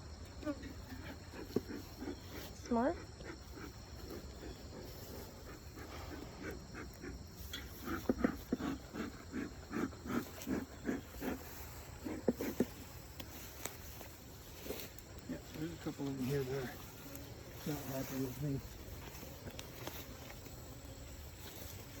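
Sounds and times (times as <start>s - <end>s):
dog panting: 0.8s - 13.0s.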